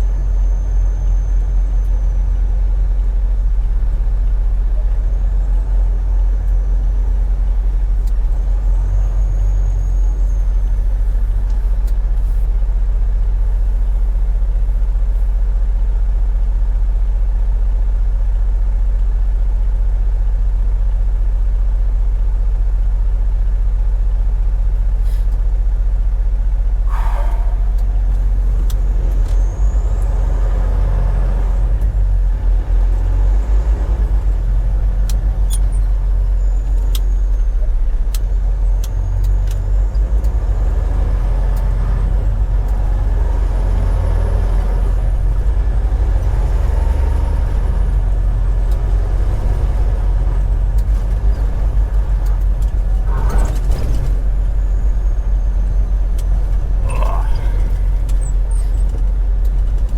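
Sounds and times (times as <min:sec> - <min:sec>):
truck engine and road rumble: 0:00.0 - 0:59.9
short falling squeal: 0:08.7 - 0:10.7, 0:26.9 - 0:30.5, 0:52.9 - 0:56.0, 0:56.8 - 0:58.9.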